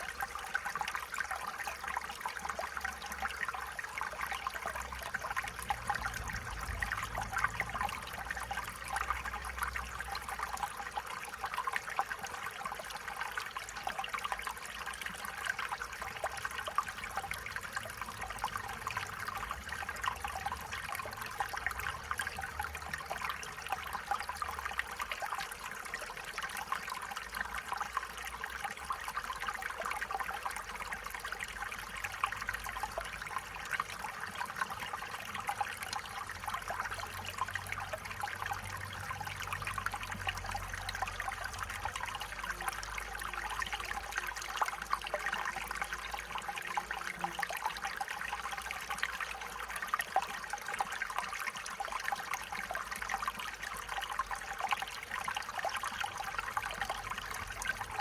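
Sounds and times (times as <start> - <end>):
stream water trickling: 0.0 - 58.0.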